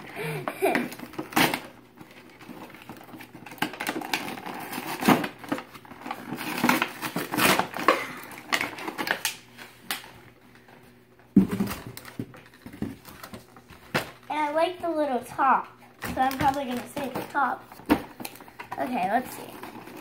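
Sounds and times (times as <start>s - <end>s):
plastic packaging crinkling: 0.9s - 9.8s, 16.1s - 20.0s.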